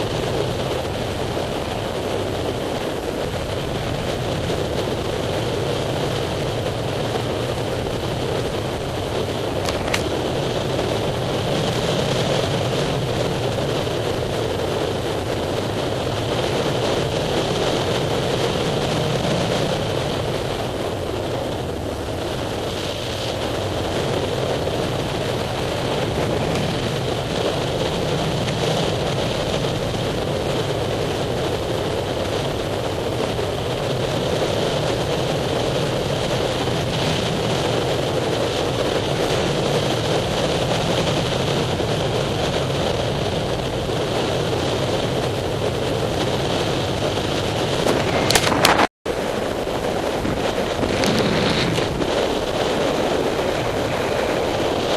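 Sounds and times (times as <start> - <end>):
wind rushing over microphone: 0.0 - 54.9.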